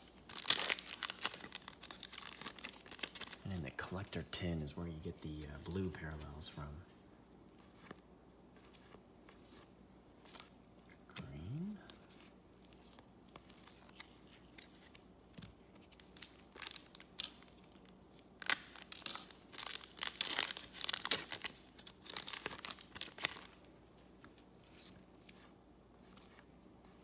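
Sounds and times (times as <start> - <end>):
card pack wrapper tearing: 0.0 - 6.8, 16.0 - 17.5, 18.4 - 23.6.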